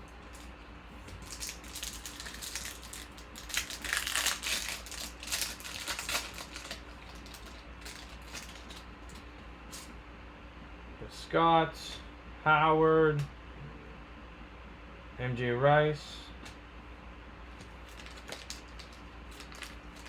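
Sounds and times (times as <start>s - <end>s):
trading cards being shuffled: 17.6s - 20.0s.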